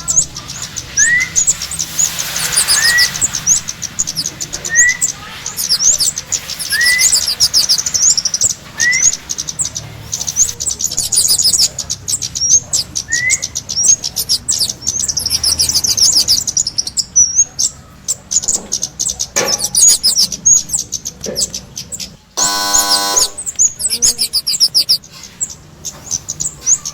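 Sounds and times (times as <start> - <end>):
high-pitched chirping trills: 0.0 - 21.1, 21.9 - 26.9
short rising whistles: 2.2 - 3.3, 6.6 - 7.4
harsh buzzing note: 22.4 - 23.6.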